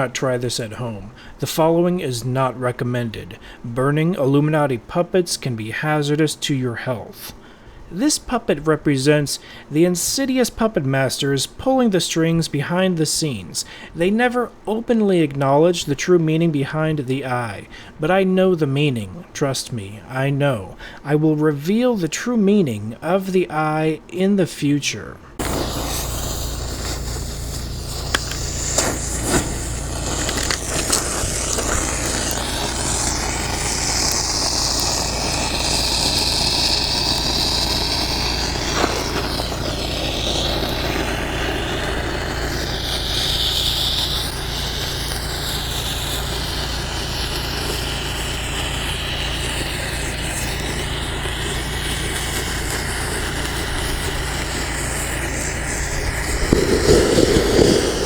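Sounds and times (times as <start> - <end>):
fire crackling: 25.4 - 58.0
fire hissing: 25.4 - 58.0
flames rushing: 25.4 - 58.0
wind rumble on microphone: 54.7 - 58.0.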